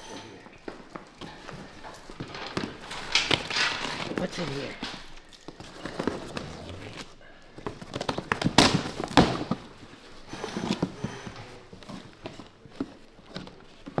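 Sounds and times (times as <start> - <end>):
cardboard crackling: 0.6 - 14.0
packing tape ripping: 2.3 - 10.8.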